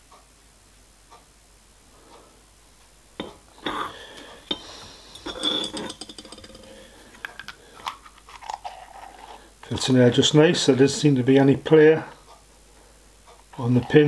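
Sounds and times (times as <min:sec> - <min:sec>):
steel parts clinking and scraping: 0:03.6 - 0:09.4.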